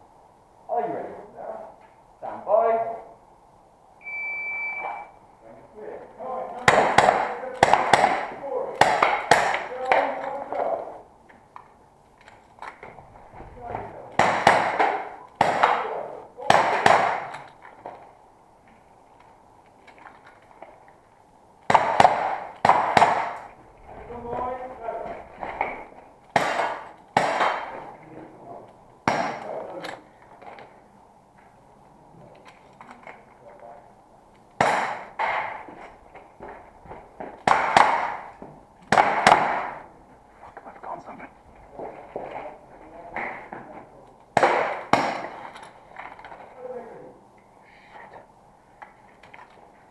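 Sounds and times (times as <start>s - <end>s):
airsoft gun shots: 6.6s - 10.0s, 14.1s - 17.5s, 21.7s - 23.5s, 26.4s - 27.8s, 29.0s - 29.6s, 34.6s - 35.6s, 37.4s - 38.3s, 38.9s - 39.8s, 44.4s - 45.4s
pellets striking targets: 6.6s - 10.2s, 13.9s - 17.5s, 21.7s - 23.6s, 25.1s - 27.9s, 29.0s - 29.6s, 34.6s - 35.7s, 37.2s - 39.9s, 44.3s - 45.5s.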